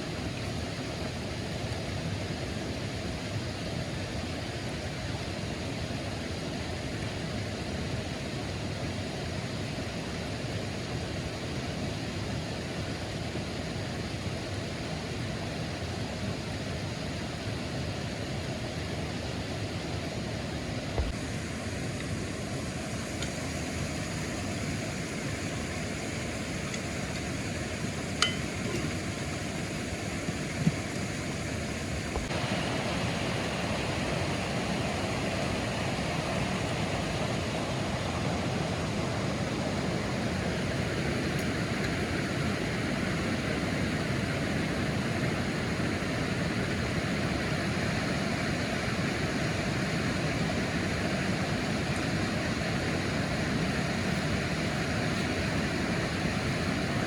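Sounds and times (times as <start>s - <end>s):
falling water rushing: 20.9s - 45.7s.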